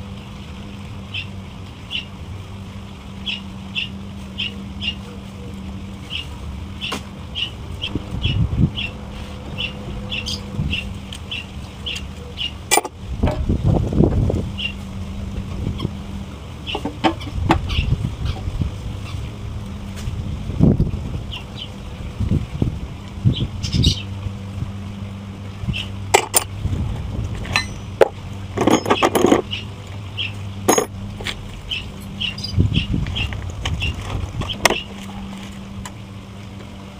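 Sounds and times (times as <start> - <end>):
steady low hum: 0.0 - 36.9
small bird chirping: 3.2 - 12.6, 31.6 - 35.0
metal tools clinking: 12.7 - 12.9, 27.4 - 29.4, 30.7 - 30.9.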